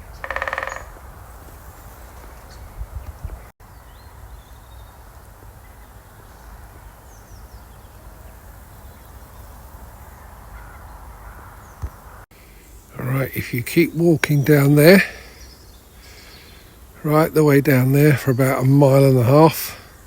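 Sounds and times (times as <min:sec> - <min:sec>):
crows cawing in the distance: 0:00.0 - 0:01.1, 0:10.0 - 0:12.2, 0:15.0 - 0:17.2
faint bird chirps: 0:02.3 - 0:17.2
low rumble and hiss: 0:04.3 - 0:20.0.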